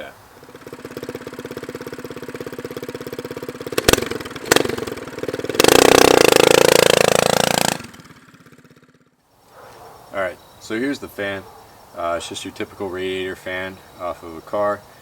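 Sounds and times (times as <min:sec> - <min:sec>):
loud rushing whir: 0:03.6 - 0:08.6
motor running with rapid pulse: 0:03.8 - 0:08.4.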